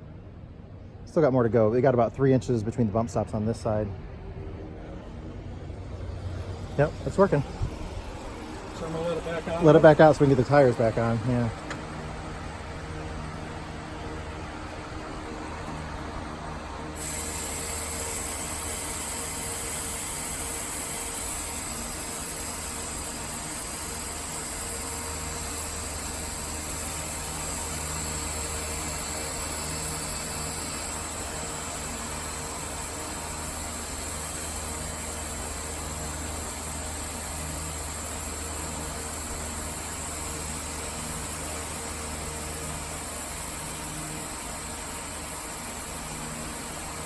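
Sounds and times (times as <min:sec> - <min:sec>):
compressed air hissing: 0:16.9 - 0:47.0.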